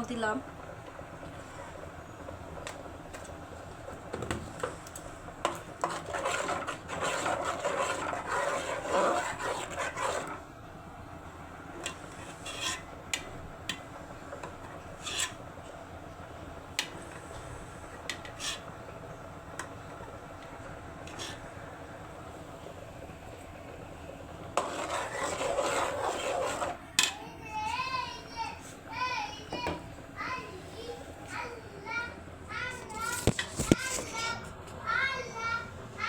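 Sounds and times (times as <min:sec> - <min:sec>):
spoon stirring in a pot: 0:04.1 - 0:10.4, 0:11.8 - 0:15.5, 0:16.7 - 0:18.7, 0:20.4 - 0:21.5, 0:24.5 - 0:27.3.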